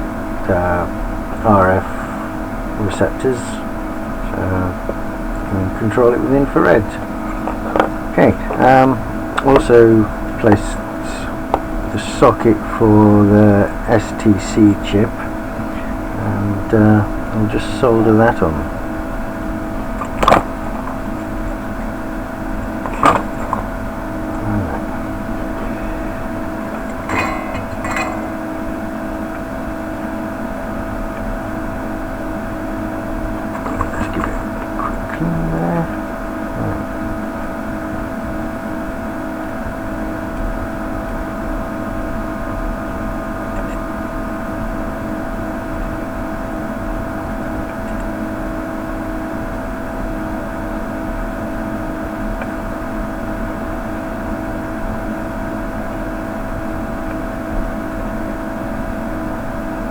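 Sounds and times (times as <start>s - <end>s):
electric whirring hum: 0.0s - 59.9s.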